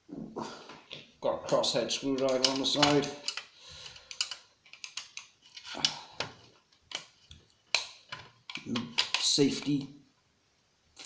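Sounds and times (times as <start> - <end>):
light clicks and knocks of handling: 1.5 - 9.8.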